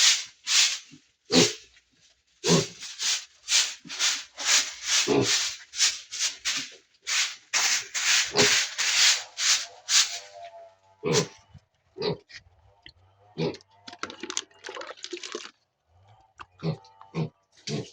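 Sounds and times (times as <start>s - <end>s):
piglets chomping and snuffling: 0.0s - 1.6s, 2.4s - 10.4s, 11.0s - 11.4s, 13.4s - 15.5s, 16.4s - 17.9s.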